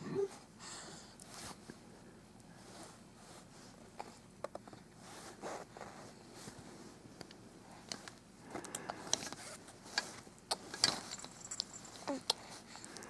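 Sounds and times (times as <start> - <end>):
baby toys clicking and scraping: 7.8 - 13.0.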